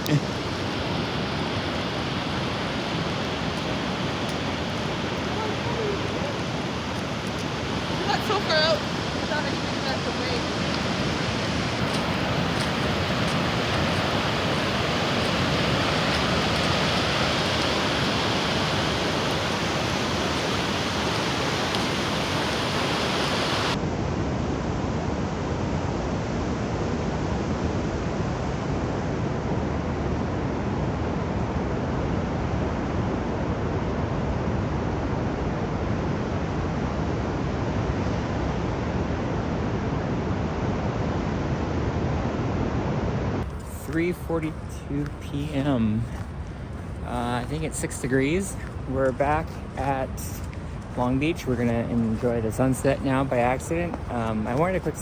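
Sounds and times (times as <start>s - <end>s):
surf breaking on beach: 0.0s - 23.8s, 43.3s - 55.0s
wind on microphone: 0.0s - 55.0s.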